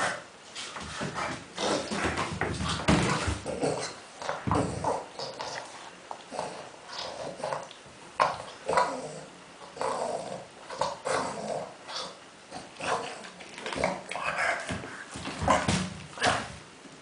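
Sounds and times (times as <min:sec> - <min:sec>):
dog making pig-like noises: 0:03.4 - 0:14.8.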